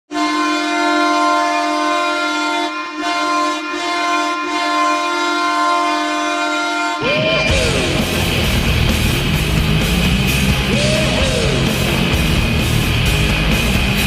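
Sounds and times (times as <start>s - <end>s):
hockey goal horn blast: 0.1s - 8.6s.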